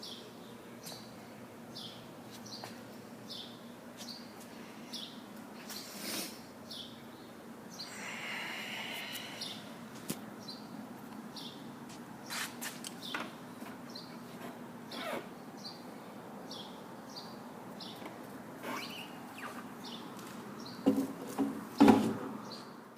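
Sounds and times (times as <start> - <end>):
birds chirping: 0.0 - 22.8
faint steady hum: 0.0 - 22.9.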